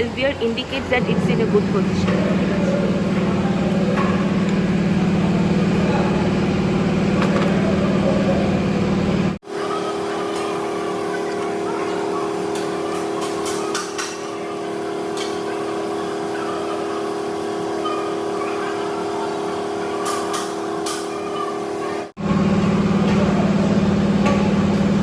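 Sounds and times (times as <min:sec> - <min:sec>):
engine hum: 0:00.0 - 0:09.4
higher-pitched hum: 0:00.0 - 0:10.2.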